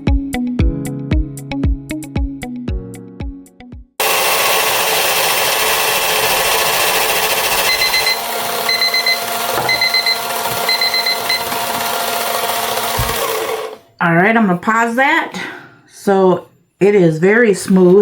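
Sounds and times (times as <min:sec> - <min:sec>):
electric sander running: 0:04.0 - 0:13.8
kitchen timer beeping: 0:04.0 - 0:13.8.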